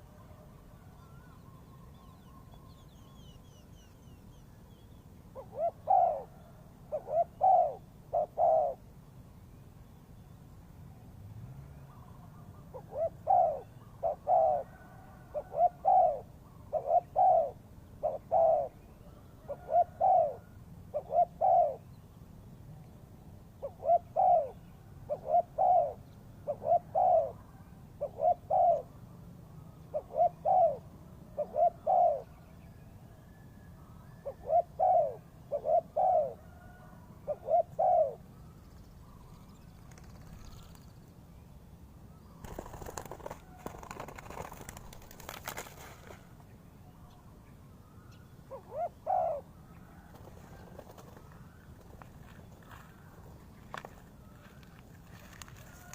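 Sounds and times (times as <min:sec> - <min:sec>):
dove cooing: 0:05.3 - 0:08.8, 0:12.7 - 0:18.8, 0:19.4 - 0:21.9, 0:23.6 - 0:29.0, 0:29.9 - 0:32.3, 0:34.2 - 0:38.2, 0:48.5 - 0:55.9.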